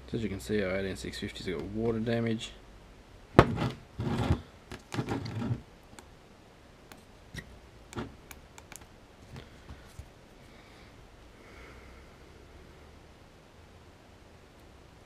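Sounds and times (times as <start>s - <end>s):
scraping rustles: 3.4s - 5.7s.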